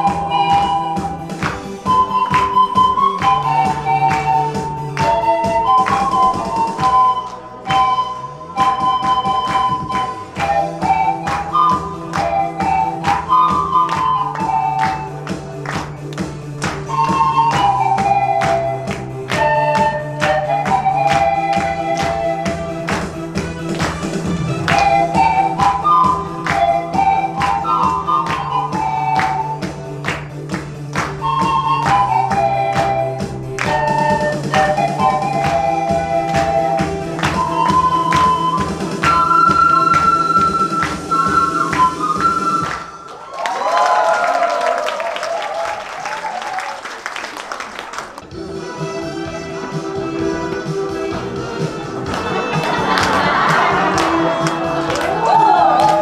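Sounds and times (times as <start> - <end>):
bass: 0.0 - 44.1, 48.1 - 56.0
pan flute melody: 0.0 - 46.6, 48.3 - 56.0
drum beat: 8.6 - 42.6, 49.1 - 56.0
steady drum beat: 20.6 - 28.1.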